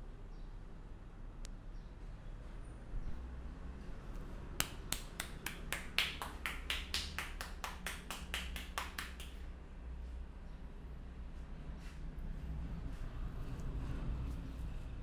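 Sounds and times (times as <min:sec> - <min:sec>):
hands slapping and clapping on head: 0:04.6 - 0:09.4.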